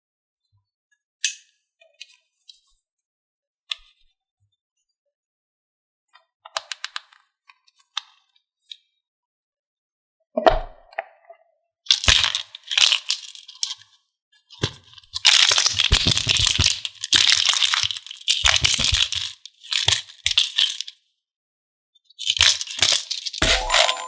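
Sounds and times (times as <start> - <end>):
small hard pieces clattering in container: 11.9 - 13.6, 15.3 - 20.9.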